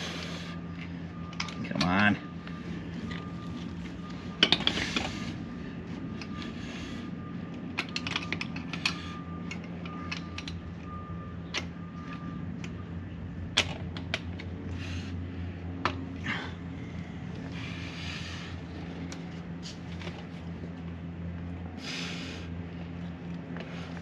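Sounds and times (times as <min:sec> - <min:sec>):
steady low hum: 0:00.0 - 0:24.0
hardware and tools clicking: 0:07.5 - 0:12.8.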